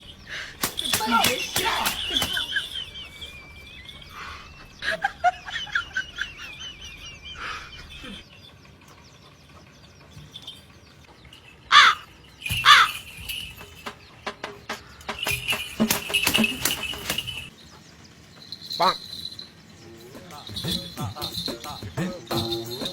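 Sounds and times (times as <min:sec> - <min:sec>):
bird wavering trill: 0:00.0 - 0:08.8, 0:10.1 - 0:13.9, 0:18.4 - 0:22.9
harsh bird calls: 0:00.0 - 0:22.9.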